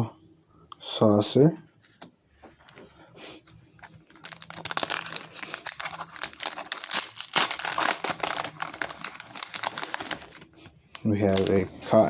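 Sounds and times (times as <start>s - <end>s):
foil wrapper crinkling: 3.8s - 12.0s.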